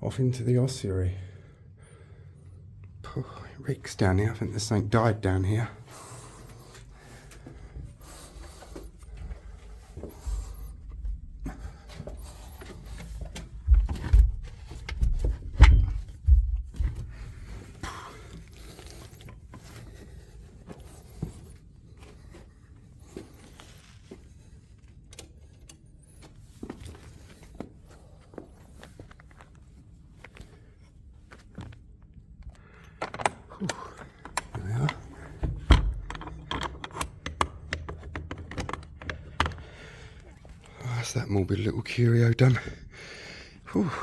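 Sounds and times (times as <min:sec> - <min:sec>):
scrapes and shuffling movement: 0:04.0 - 0:25.0
heavy low thumps: 0:13.6 - 0:17.2.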